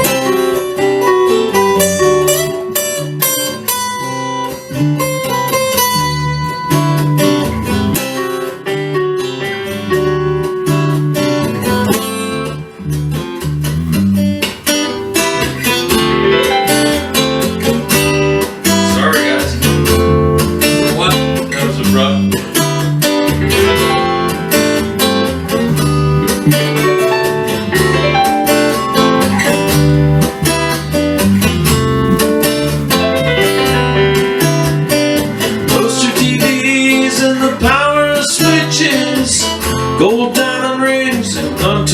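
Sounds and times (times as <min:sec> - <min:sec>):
acoustic guitar strummed and picked: 0:00.0 - 0:41.9.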